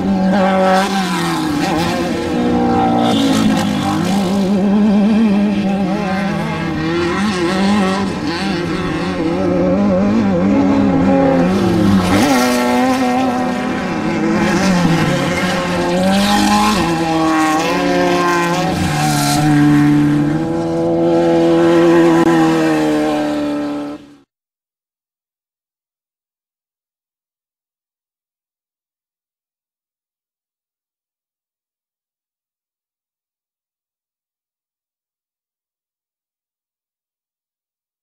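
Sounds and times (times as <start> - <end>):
race vehicle engines revving: 0.0 - 24.1.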